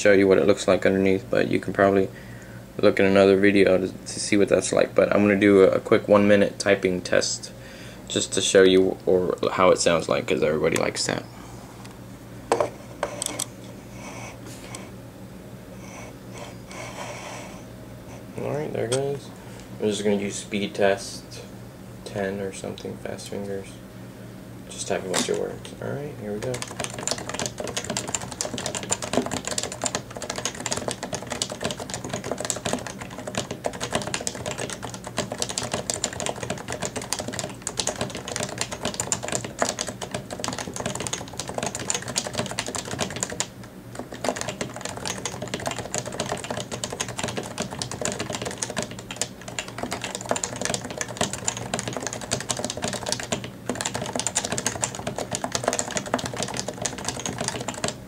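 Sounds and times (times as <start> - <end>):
fast keyboard typing: 26.4 - 58.0.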